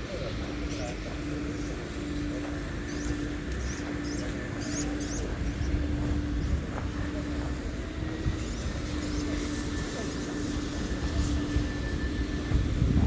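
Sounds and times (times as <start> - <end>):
bird chirping: 2.9 - 5.4.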